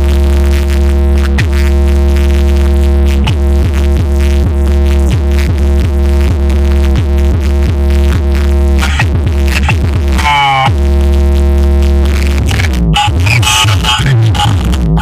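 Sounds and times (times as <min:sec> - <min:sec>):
deep bass: 0:00.0 - 0:15.0
loud electronic music: 0:00.0 - 0:15.0.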